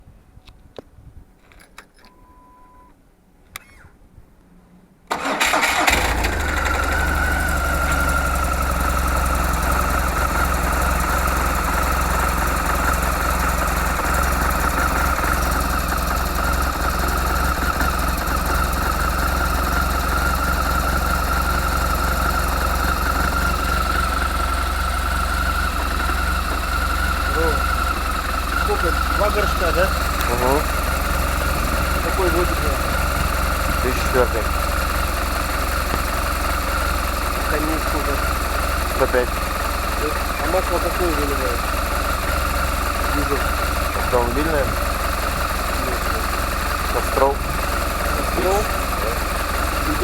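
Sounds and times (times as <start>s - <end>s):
short beep: 2.0s - 3.0s
motorcycle engine idling: 5.2s - 50.0s.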